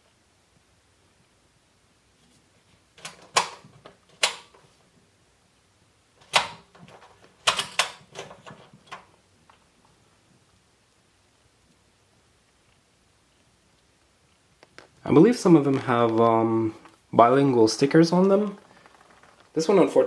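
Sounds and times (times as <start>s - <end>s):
box fan clicking and knocking: 6.2s - 9.1s.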